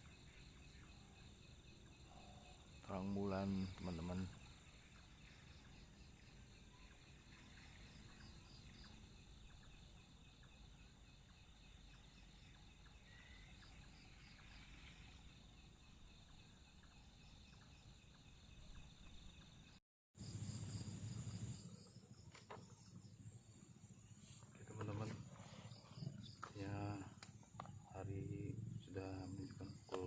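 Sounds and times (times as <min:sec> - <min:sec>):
crickets chirring: 0:00.0 - 0:30.0.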